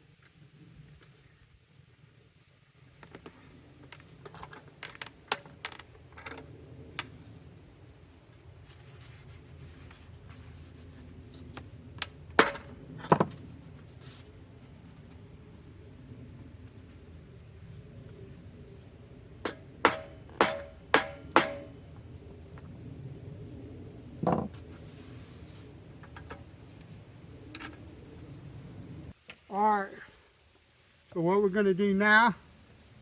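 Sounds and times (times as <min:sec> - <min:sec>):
faint low hum: 0:05.2 - 0:29.2
clamps and boards knocking: 0:19.5 - 0:21.7.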